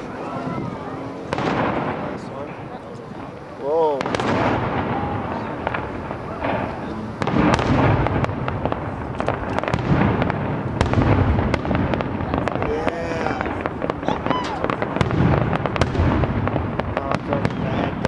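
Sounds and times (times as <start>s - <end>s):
fireworks crackling: 0.0s - 18.0s
firework shells bursting: 1.3s - 18.0s.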